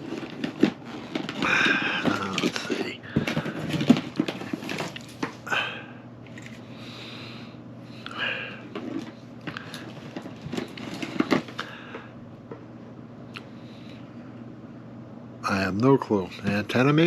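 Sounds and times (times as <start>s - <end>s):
small objects rummaged through: 0.0s - 5.5s, 8.6s - 11.8s.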